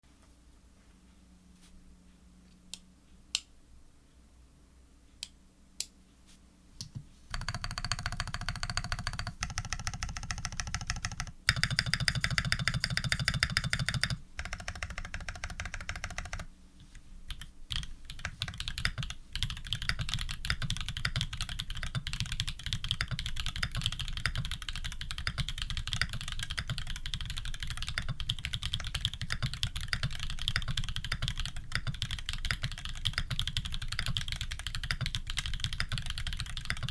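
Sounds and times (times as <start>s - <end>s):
mechanical keyboard typing: 7.3s - 16.5s, 17.3s - 36.9s.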